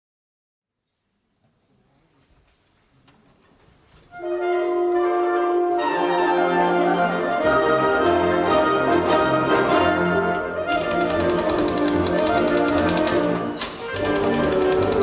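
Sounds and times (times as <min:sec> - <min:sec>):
wind band playing: 0:04.1 - 0:15.0.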